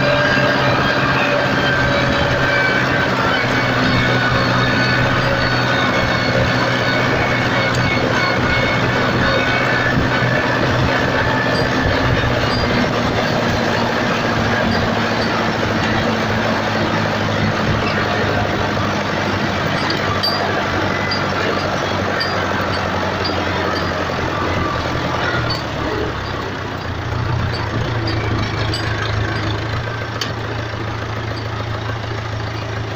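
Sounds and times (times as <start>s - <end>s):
tractor diesel engine running: 0.0s - 32.9s.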